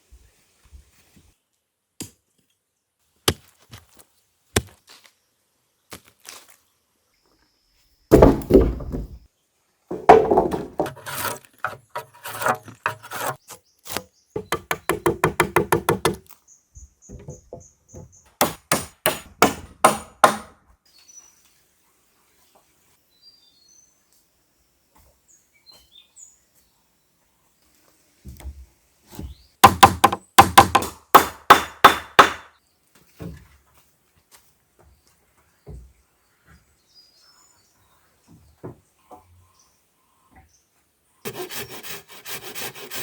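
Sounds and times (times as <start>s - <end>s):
wood being chopped: 8.1s - 9.2s, 9.9s - 11.2s, 18.4s - 20.5s, 29.6s - 32.5s.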